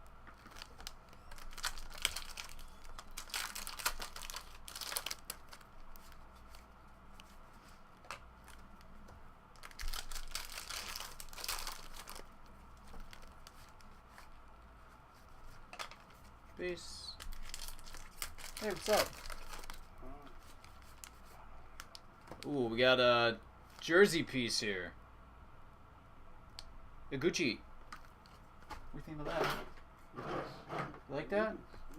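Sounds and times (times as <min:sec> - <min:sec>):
cards rustling: 0:00.3 - 0:08.9, 0:09.6 - 0:14.3, 0:17.2 - 0:22.6
card pack wrappers tearing: 0:00.4 - 0:06.6, 0:09.6 - 0:12.3, 0:17.2 - 0:19.8.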